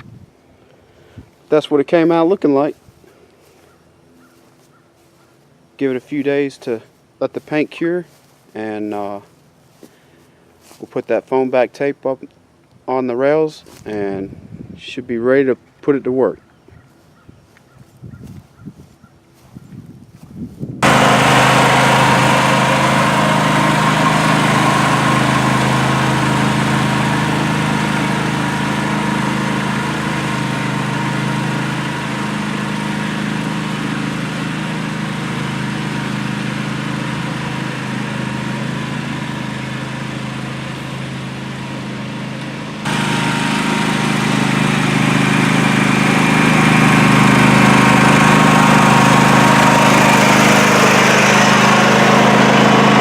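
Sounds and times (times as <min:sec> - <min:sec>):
lawn mower engine running: 0:00.9 - 0:10.8, 0:20.8 - 0:53.0.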